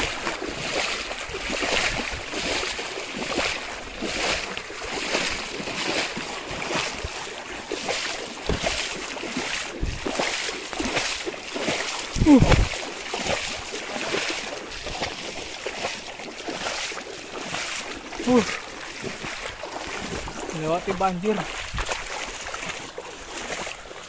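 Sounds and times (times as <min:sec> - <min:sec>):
water sloshing and splashing: 0:00.0 - 0:24.0
wind on microphone: 0:01.2 - 0:02.6, 0:09.8 - 0:10.2, 0:12.1 - 0:12.8, 0:20.0 - 0:20.4, 0:21.5 - 0:22.2.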